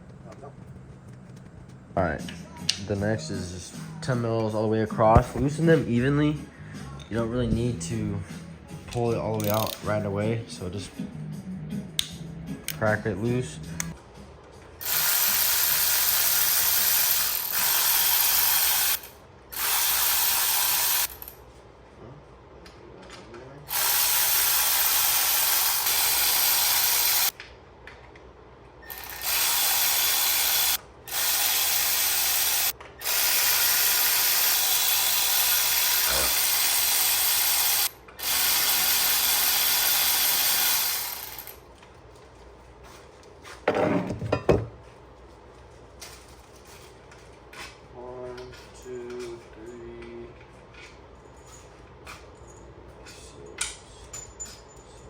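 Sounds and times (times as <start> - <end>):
cordless power tool spinning: 5.2 - 5.5, 14.8 - 21.3, 23.7 - 27.3, 28.9 - 41.6.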